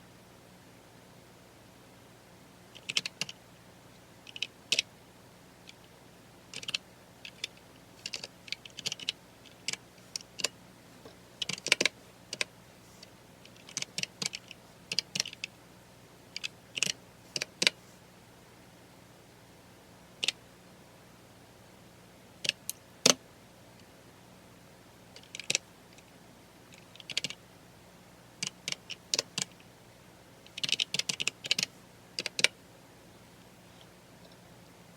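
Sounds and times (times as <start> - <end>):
keyboard keystroke clicks: 2.8 - 3.4, 6.5 - 10.5, 11.4 - 12.5, 27.0 - 27.4, 30.5 - 32.6.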